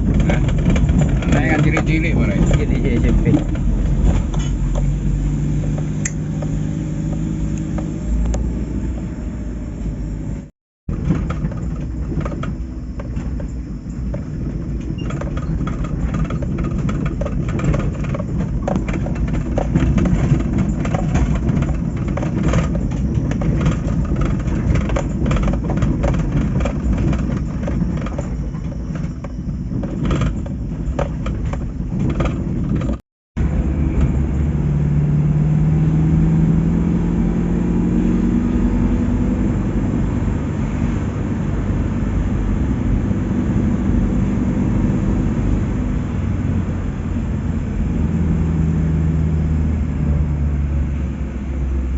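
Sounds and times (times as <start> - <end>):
small rattling knocks: 0.0 - 5.0, 10.9 - 33.0
vehicle engine and road rumble: 0.0 - 51.9.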